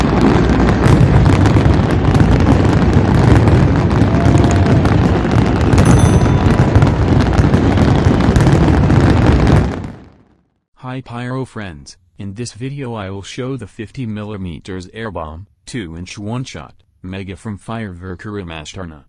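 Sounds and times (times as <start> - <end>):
fireworks barrage: 0.0 - 10.3.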